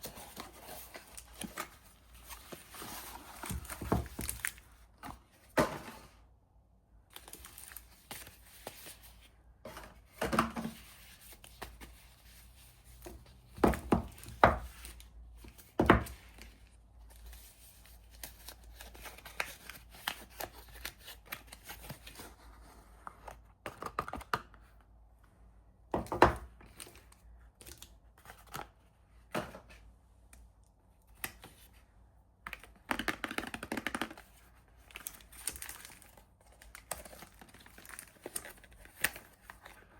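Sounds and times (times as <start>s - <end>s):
soap wrappers crinkling: 32.4s - 39.9s.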